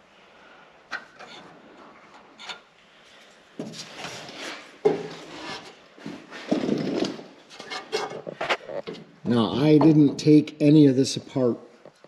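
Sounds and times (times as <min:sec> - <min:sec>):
handling rubbing and scraping: 0:01.0 - 0:09.1.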